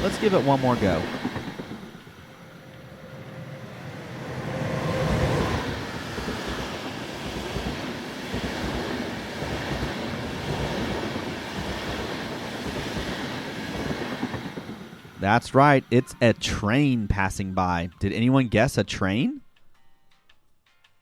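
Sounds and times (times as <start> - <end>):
train rumbling past: 0.0 - 18.2.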